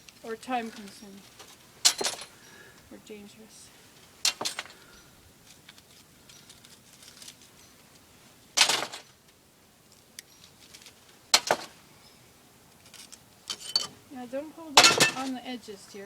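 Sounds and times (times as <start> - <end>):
handling noise: 0.0 - 16.0
broken glass clinking: 1.8 - 2.5, 12.9 - 14.0, 14.8 - 15.4.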